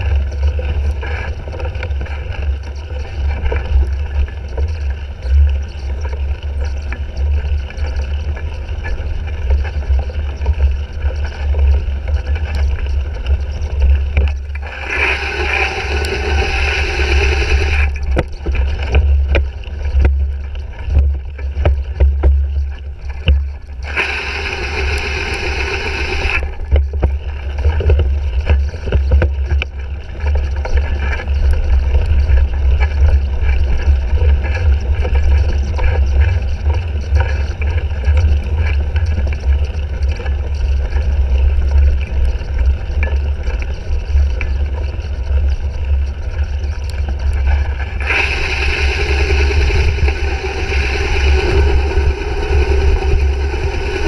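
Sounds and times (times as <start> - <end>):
heavy low rumble: 12.1 - 36.7, 45.4 - 54.0
bright hiss: 14.6 - 18.0, 23.8 - 26.4, 48.0 - 54.0
wind buffeting microphone: 44.6 - 54.0.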